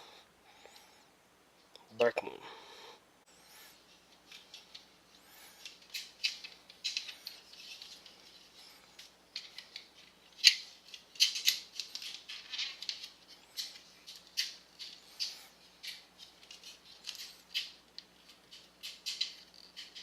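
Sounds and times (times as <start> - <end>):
plastic parts scraping: 5.5 - 20.0.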